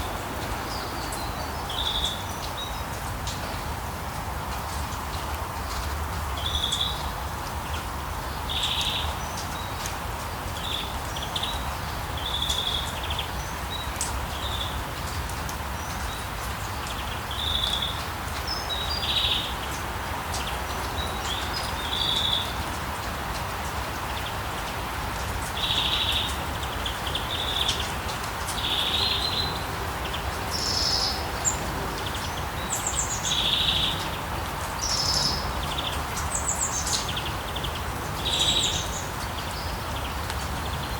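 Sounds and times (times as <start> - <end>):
steady rain hiss: 0.0 - 40.9
birds calling and chirping: 25.2 - 40.9.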